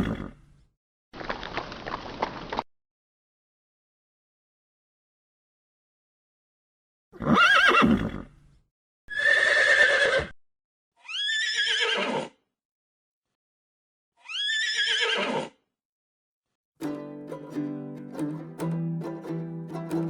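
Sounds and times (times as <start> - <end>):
horse neighing: 7.2 - 8.3, 9.1 - 10.4, 11.1 - 12.3, 14.3 - 15.5.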